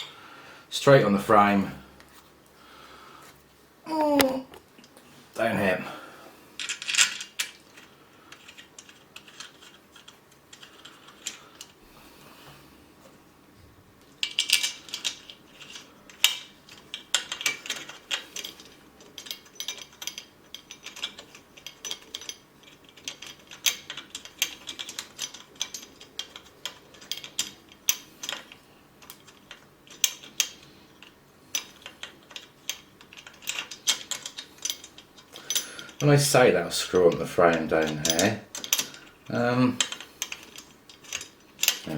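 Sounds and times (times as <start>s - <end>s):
metal parts clicking and clinking: 6.6s - 11.8s, 14.0s - 41.9s.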